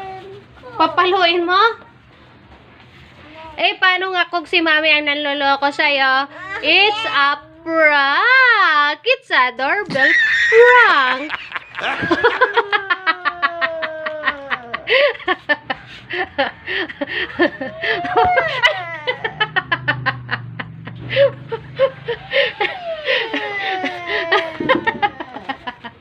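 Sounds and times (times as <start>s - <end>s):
laughter in rapid pulses: 11.0s - 26.0s
child wailing: 11.8s - 14.9s, 17.6s - 19.5s, 22.1s - 25.6s.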